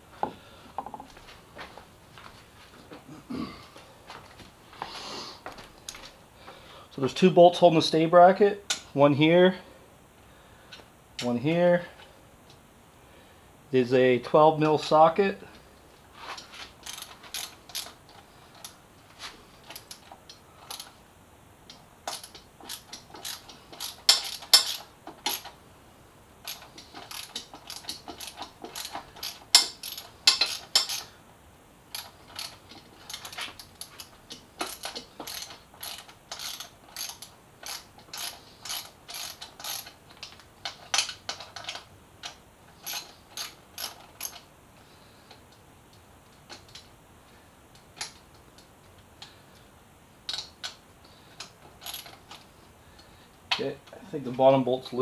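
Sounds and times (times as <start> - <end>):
ratchet wrench clicking: 16.8 - 18.0, 19.7 - 20.9, 22.0 - 25.5, 26.4 - 31.1, 31.9 - 44.4, 51.4 - 52.2.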